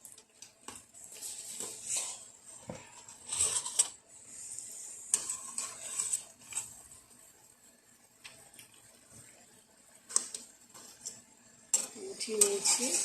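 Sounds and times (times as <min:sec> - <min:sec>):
hot oil sizzling: 0:00.0 - 0:13.0
metal utensil clicking against pan: 0:11.7 - 0:13.0.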